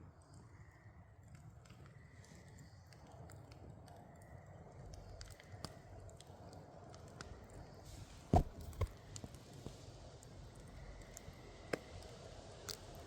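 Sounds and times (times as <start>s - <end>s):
dull thump: 8.4s - 8.9s.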